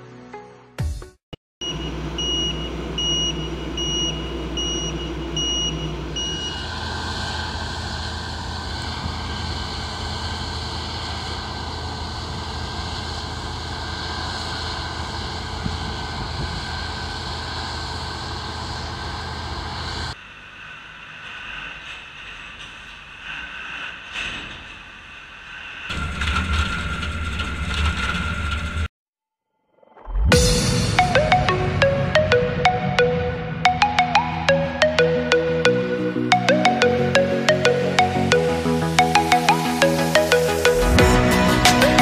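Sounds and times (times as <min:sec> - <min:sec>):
reversing alarm beeping: 0:01.6 - 0:13.4, 0:30.3 - 0:42.0
harvest machine engine running: 0:01.7 - 0:22.4.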